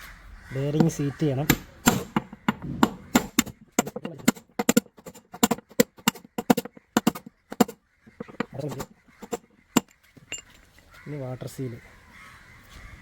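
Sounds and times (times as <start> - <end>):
sharp hammer taps: 0.8 - 10.5.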